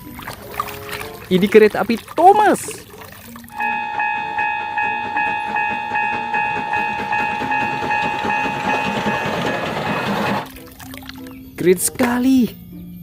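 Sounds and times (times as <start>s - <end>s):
toy train pulsing whine: 3.6s - 10.5s.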